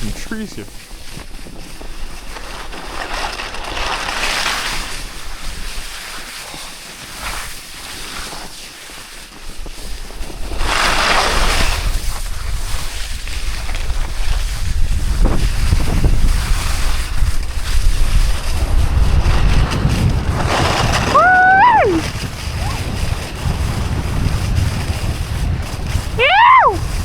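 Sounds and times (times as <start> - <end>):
edges scraping across snow: 0.0 - 27.0
wind rumbling on microphone: 9.3 - 27.0.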